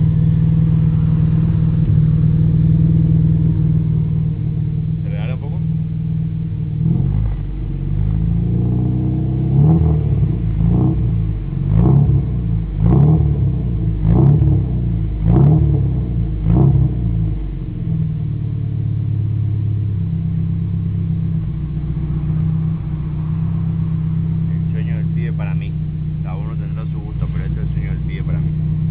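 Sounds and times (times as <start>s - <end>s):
car engine idling and revving: 0.0s - 28.9s.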